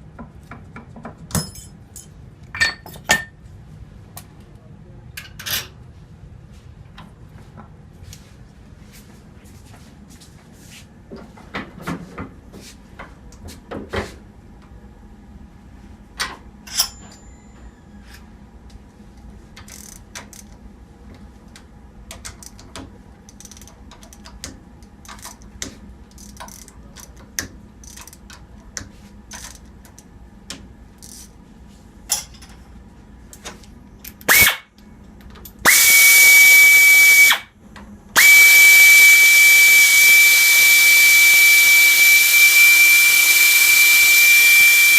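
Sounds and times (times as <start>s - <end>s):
metal tools clicking and knocking: 1.2s - 3.4s, 16.2s - 17.4s.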